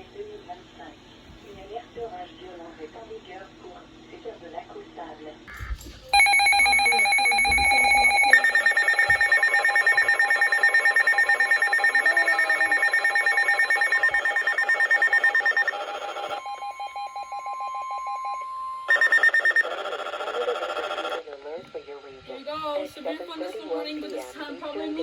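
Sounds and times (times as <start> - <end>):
pulsing multi-tone alarm: 5.5 - 21.3.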